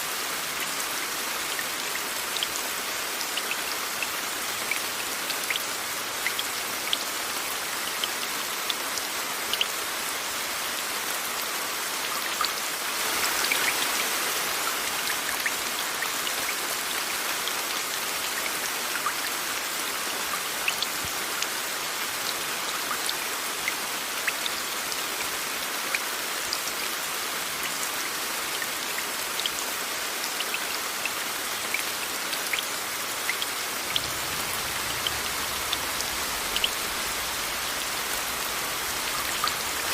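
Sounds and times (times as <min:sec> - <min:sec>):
steady rain: 0:00.0 - 0:39.9
white noise hiss: 0:32.9 - 0:39.9.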